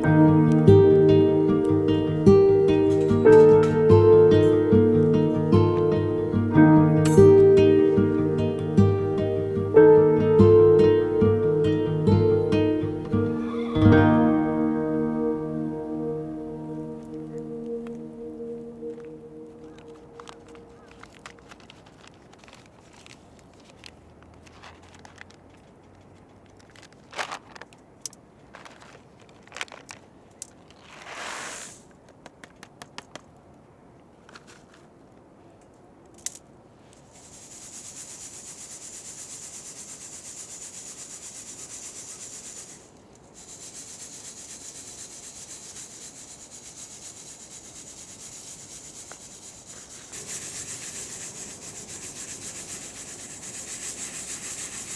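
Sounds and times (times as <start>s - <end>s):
dry scraping and rubbing: 30.7s - 31.8s, 48.1s - 54.9s.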